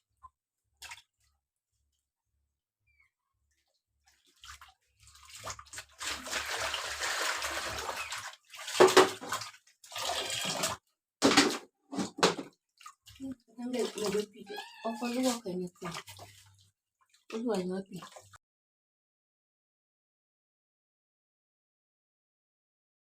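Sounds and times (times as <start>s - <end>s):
running water: 4.0s - 11.4s, 12.0s - 18.4s
water splashing: 4.0s - 18.4s.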